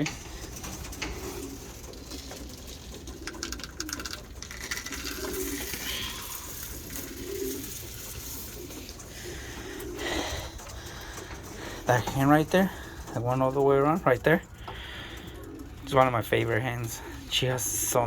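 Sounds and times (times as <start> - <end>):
patter of clicks: 0.0 - 17.3
pigeons cooing: 0.0 - 18.0.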